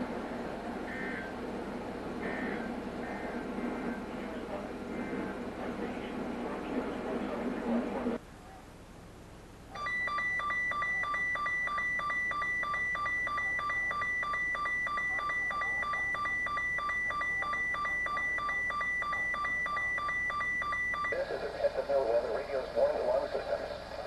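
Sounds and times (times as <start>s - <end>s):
two-tone alarm beeping: 9.8s - 21.2s.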